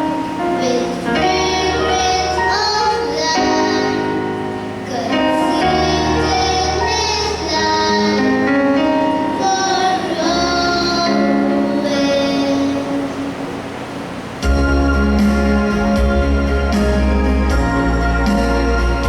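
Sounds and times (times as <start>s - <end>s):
girls singing a prayer song: 0.6s - 4.2s, 4.9s - 8.6s, 9.3s - 13.4s
low instrumental accompaniment: 14.4s - 19.0s.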